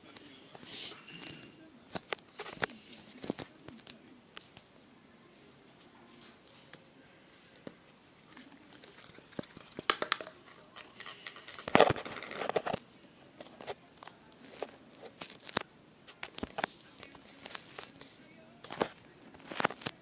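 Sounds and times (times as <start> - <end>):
slime crinkling and rustling: 14.5 - 20.0.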